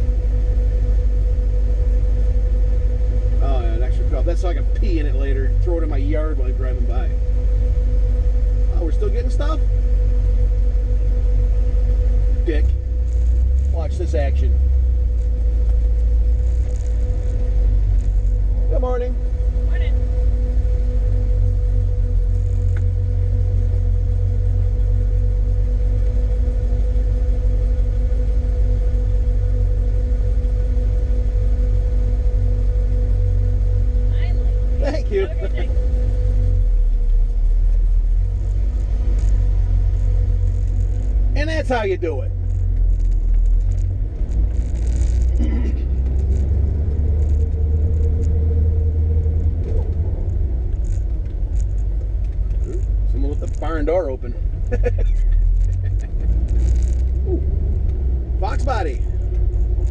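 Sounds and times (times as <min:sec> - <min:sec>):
car engine idling: 0:00.0 - 0:59.9
faint steady tone: 0:00.0 - 0:59.9.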